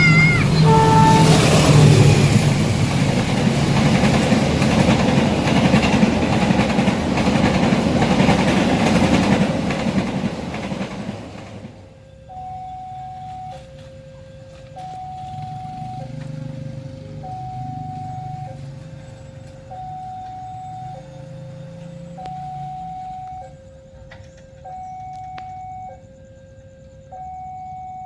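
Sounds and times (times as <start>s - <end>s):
train horn chord: 0.0s - 2.8s
train rumble and rail clatter: 0.0s - 27.3s.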